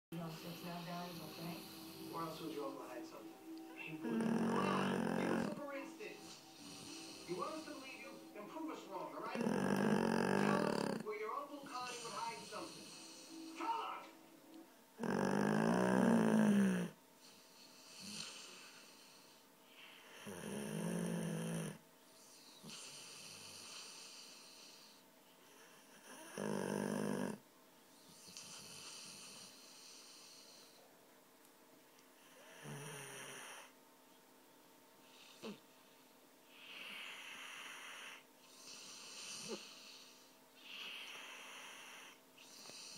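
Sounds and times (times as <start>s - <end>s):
dog snoring loudly: 0.2s - 2.5s, 4.0s - 7.8s, 9.2s - 11.1s, 11.7s - 13.5s, 15.0s - 17.0s, 17.8s - 19.3s, 19.9s - 21.8s, 22.6s - 27.4s, 28.1s - 30.8s, 32.2s - 33.7s, 36.5s - 42.9s
dog breathing: 0.2s - 8.4s, 9.0s - 11.0s, 11.7s - 13.6s, 22.5s - 25.0s, 28.0s - 30.8s, 36.5s - 42.9s
dog snorting: 3.8s - 7.9s, 9.2s - 11.1s, 15.0s - 17.0s, 26.0s - 27.4s.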